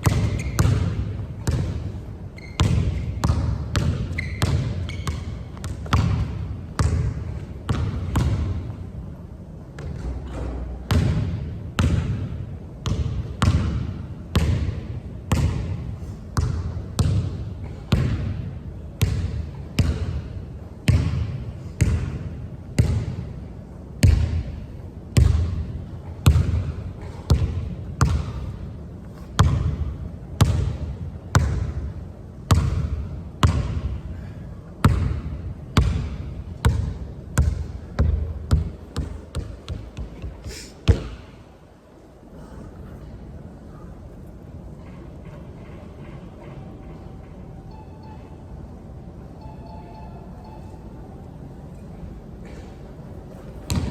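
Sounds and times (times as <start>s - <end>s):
basketball bouncing on hard court: 0.0s - 8.7s, 10.9s - 15.8s, 16.4s - 18.4s, 19.0s - 20.2s, 20.9s - 22.2s, 22.8s - 23.2s, 24.0s - 24.4s, 25.2s - 25.6s, 26.2s - 28.6s, 29.4s - 31.8s, 32.5s - 33.9s, 34.8s - 41.3s, 53.6s - 53.9s.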